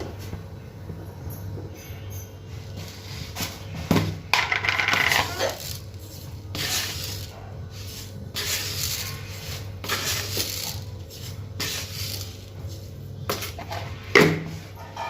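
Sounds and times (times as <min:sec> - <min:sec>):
small hard objects clinking: 0:04.3 - 0:06.0
steady low hum: 0:05.5 - 0:15.0.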